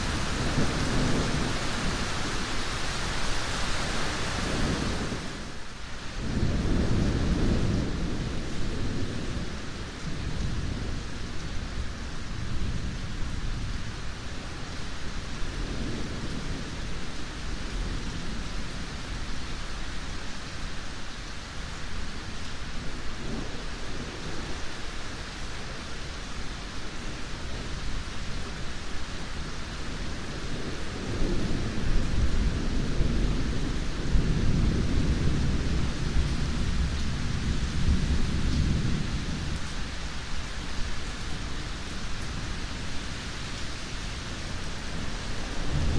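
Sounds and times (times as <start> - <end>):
distant thunder rumbling: 0.0 - 3.2, 6.2 - 13.9, 44.4 - 45.9
steady rain falling: 0.0 - 45.9.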